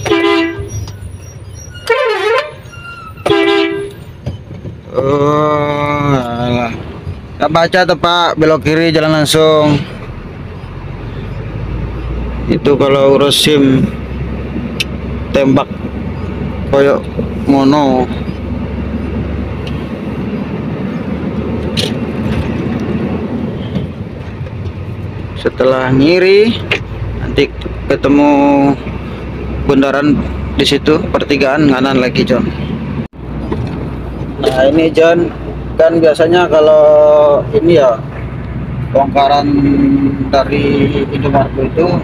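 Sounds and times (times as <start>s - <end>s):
multi-tone musical air horn: 0.0s - 0.8s, 1.8s - 4.0s
truck engine running: 0.0s - 42.0s.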